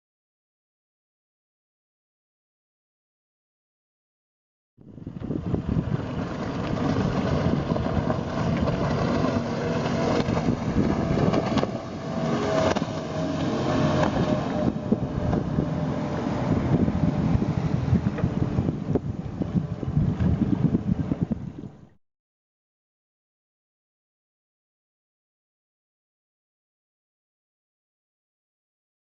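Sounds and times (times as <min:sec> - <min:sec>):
wind buffeting microphone: 0:04.8 - 0:21.9
outboard engines droning: 0:04.8 - 0:22.0
rushing water: 0:04.9 - 0:22.0.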